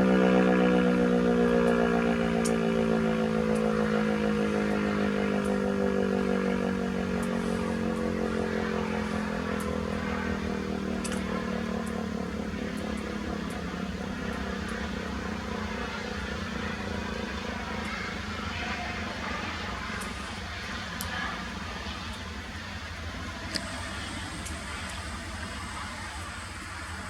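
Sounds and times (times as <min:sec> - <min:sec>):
warning siren winding down: 0:00.0 - 0:21.2
low background rumble: 0:00.0 - 0:27.0.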